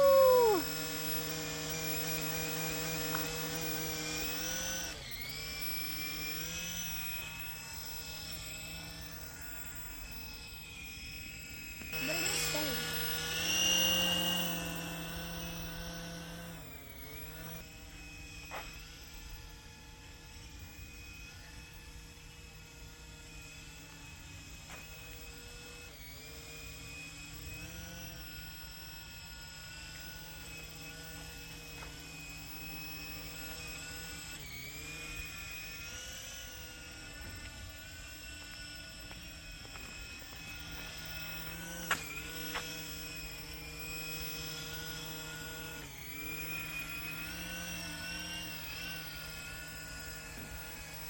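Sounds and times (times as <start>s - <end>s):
toy helicopter motors whining: 0.0s - 51.0s.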